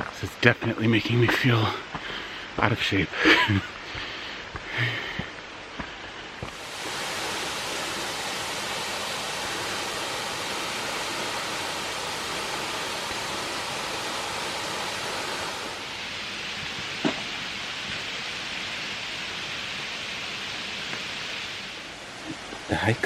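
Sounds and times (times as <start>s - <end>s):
waterfall rushing: 6.4s - 23.0s.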